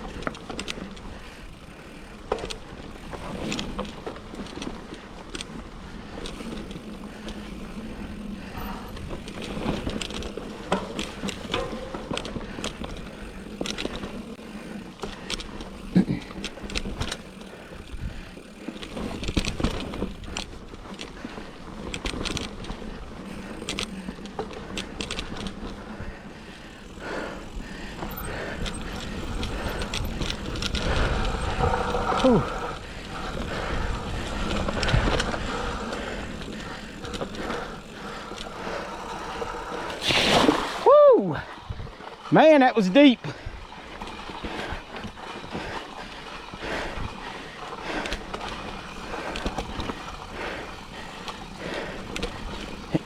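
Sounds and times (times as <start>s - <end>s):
bike tyres on dirt trail: 0.0s - 53.0s
chain and frame rattling: 27.7s - 39.7s.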